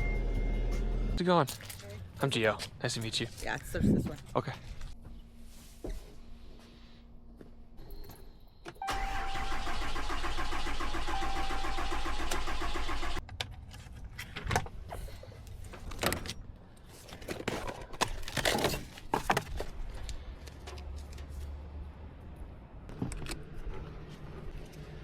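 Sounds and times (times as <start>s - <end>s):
diesel engine cranking: 8.8s - 13.2s.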